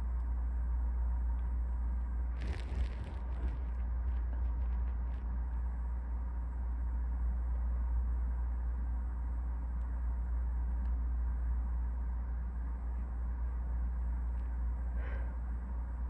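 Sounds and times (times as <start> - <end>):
steady low hum: 0.0 - 16.0
faint crackles: 2.2 - 6.3.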